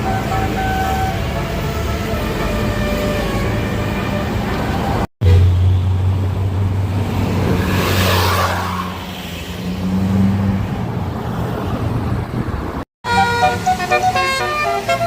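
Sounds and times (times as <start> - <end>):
multi-tone air horn melody: 0.0 - 4.5, 13.0 - 15.0
bus engine droning: 0.0 - 7.6, 11.8 - 15.0.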